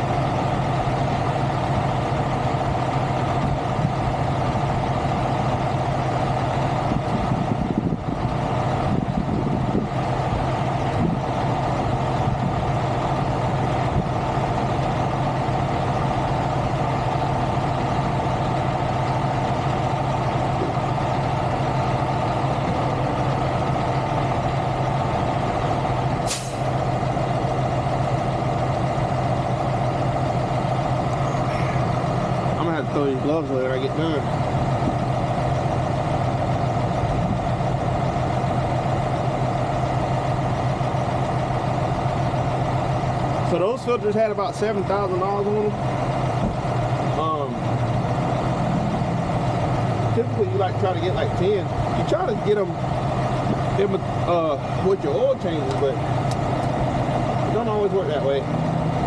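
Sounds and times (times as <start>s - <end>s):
diesel truck engine idling: 0.0s - 59.0s
sharp hiss: 26.3s - 26.7s.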